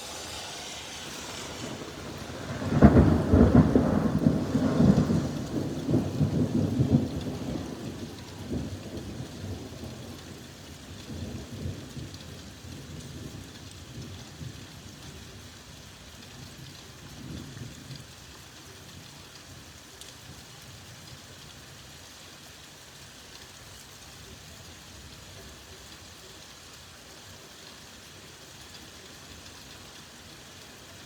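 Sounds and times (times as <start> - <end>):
thunder rumble: 0.0 - 10.0
steady rain falling: 0.0 - 31.0.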